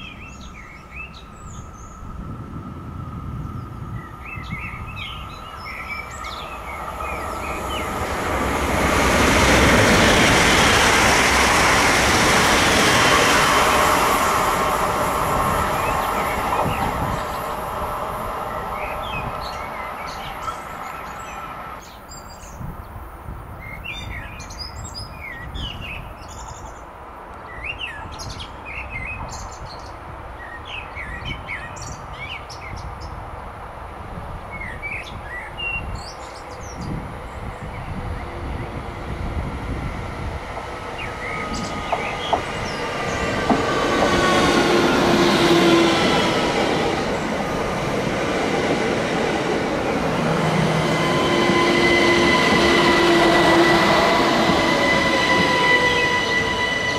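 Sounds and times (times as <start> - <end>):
low rumble of rail traffic: 0.0 - 56.9
electric train whining: 1.2 - 21.8, 36.9 - 56.9
birds chirping: 3.5 - 22.6, 40.6 - 56.9.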